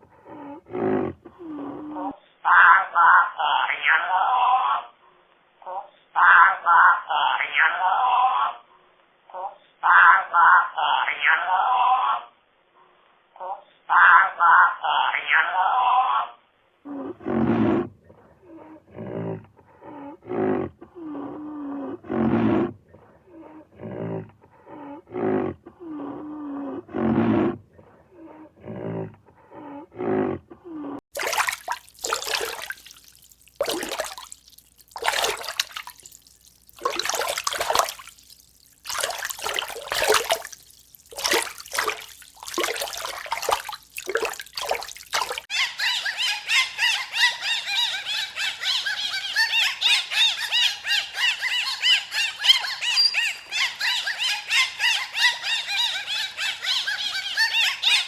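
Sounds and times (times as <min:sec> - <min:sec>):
animal grunting roaring calls: 0:00.0 - 0:02.2, 0:16.9 - 0:31.0.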